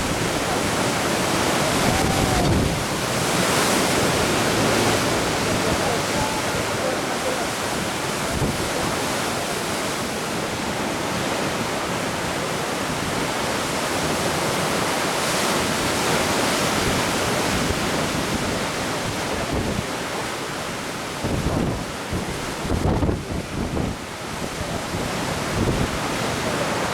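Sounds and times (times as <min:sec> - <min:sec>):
wind buffeting microphone: 0:00.0 - 0:12.0, 0:21.2 - 0:26.9
surf washing on shore: 0:00.0 - 0:26.9.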